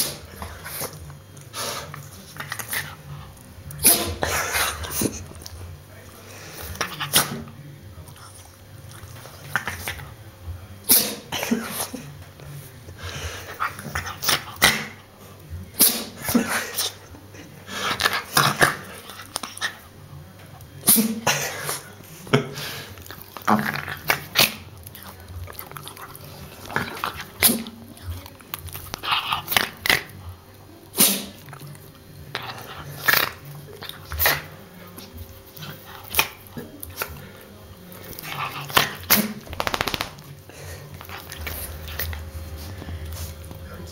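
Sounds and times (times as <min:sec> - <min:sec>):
dog sneezing: 0:03.8 - 0:04.8, 0:10.9 - 0:12.0, 0:15.8 - 0:17.0, 0:20.8 - 0:21.9, 0:30.9 - 0:31.4, 0:38.8 - 0:40.0
rapid clicks: 0:39.5 - 0:40.2.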